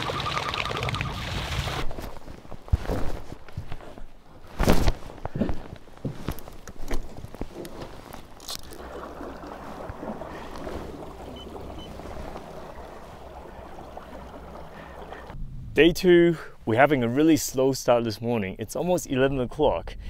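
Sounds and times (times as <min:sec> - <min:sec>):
wind and water rushing: 0:00.0 - 0:03.5, 0:06.7 - 0:15.4.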